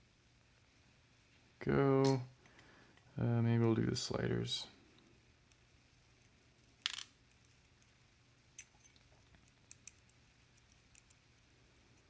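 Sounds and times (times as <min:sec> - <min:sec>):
faint clicks of small parts: 0:04.8 - 0:12.0.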